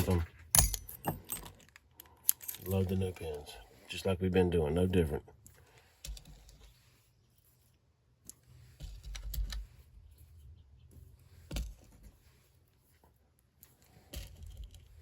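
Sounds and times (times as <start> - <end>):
small metal lock parts clicking: 0.0 - 3.4.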